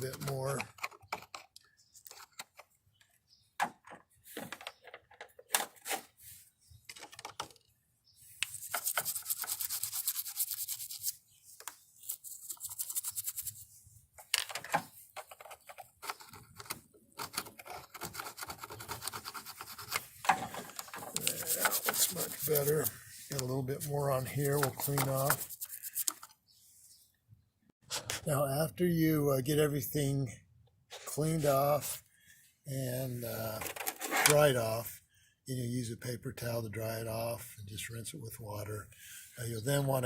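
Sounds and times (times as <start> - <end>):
scratchy scraping on metal: 8.4 - 11.2, 17.6 - 26.2, 33.8 - 34.6.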